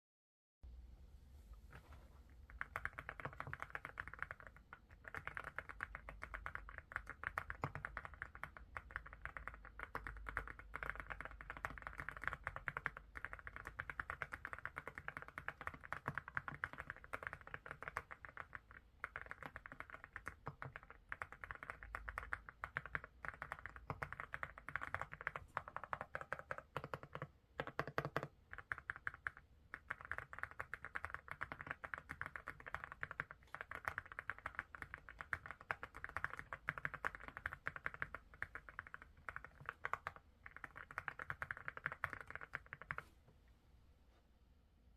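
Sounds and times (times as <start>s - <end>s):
mechanical keyboard typing: 2.5s - 43.1s.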